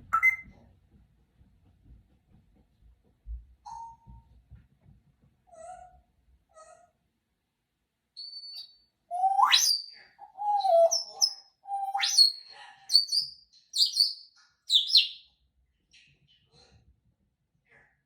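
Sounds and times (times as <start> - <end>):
parrot whistling and chirping: 0.1 - 0.4, 8.2 - 15.2.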